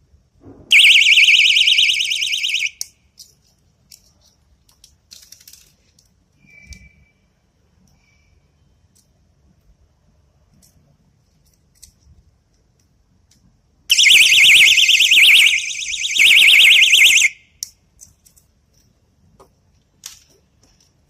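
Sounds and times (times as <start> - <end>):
shrill warbling alarm siren: 0.7 - 2.8, 13.9 - 17.4.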